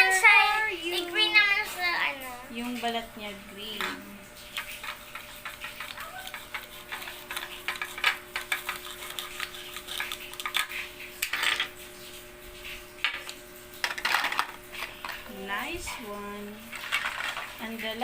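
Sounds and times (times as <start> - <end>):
plastic toys clicking and clattering: 4.6 - 11.7, 13.8 - 15.3, 16.7 - 17.7.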